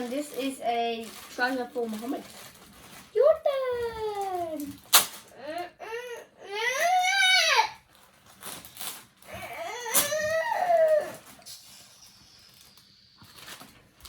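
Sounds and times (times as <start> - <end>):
young child crying and whining: 5.4 - 7.8, 9.3 - 11.4.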